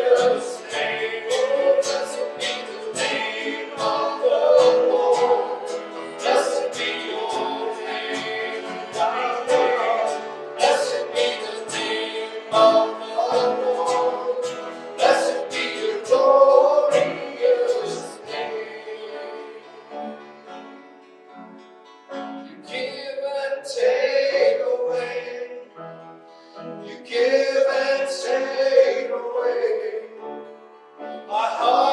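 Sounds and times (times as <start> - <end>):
voices singing worship song: 0.0 - 20.9, 22.4 - 31.9
instrumental accompaniment: 0.0 - 23.0.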